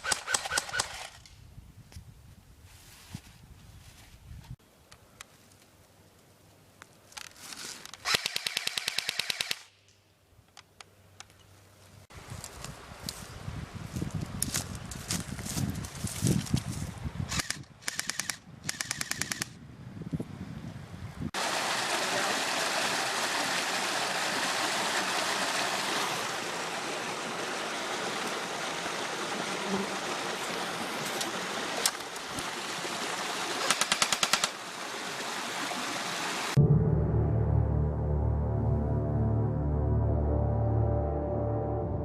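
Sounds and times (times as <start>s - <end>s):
airsoft gun firing rapid clicks: 0.0s - 1.3s, 8.0s - 9.9s, 17.3s - 19.6s, 33.7s - 34.6s.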